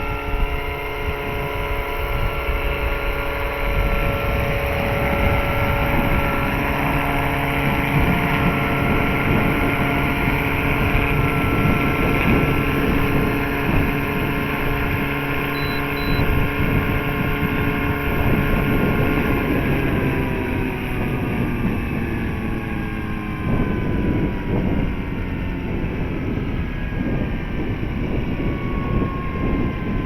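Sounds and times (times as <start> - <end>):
helicopter motor and rotor whine: 0.0 - 30.0
wind buffeting microphone: 0.0 - 30.0.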